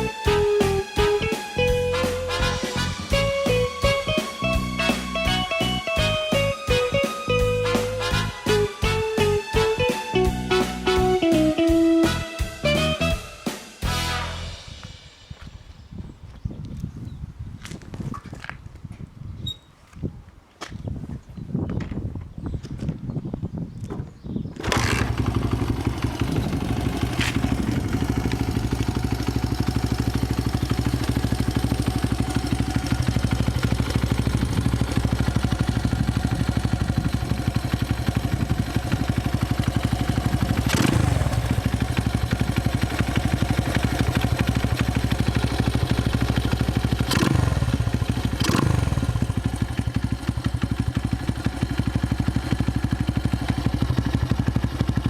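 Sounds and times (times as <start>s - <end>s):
motorcycle throttle blips: 23.8s - 55.0s
motorcycle engine idling: 24.6s - 55.0s.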